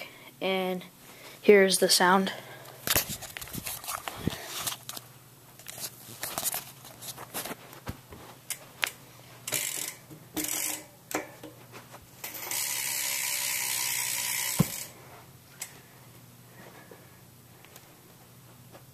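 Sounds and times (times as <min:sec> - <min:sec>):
bicycle hub ratchet clicking: 0:09.5 - 0:11.2, 0:12.2 - 0:15.0.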